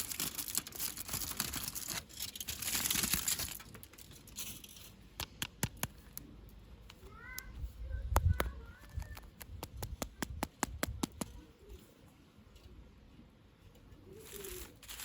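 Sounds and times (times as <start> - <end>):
packaging crinkling and tearing: 0.0 - 4.1, 14.2 - 15.0.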